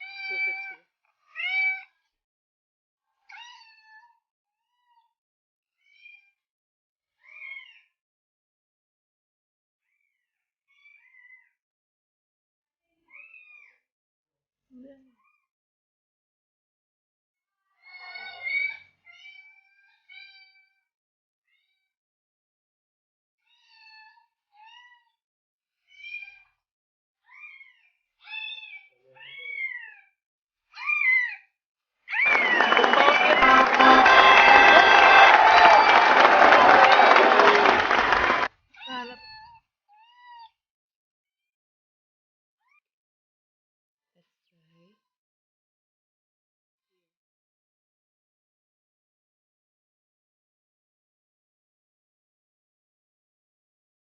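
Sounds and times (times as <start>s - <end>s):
cat meowing: 0.0s - 0.8s.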